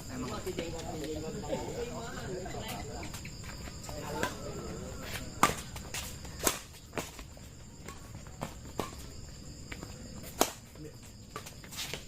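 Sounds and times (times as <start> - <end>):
high-pitched insect drone: 1.5 - 6.4.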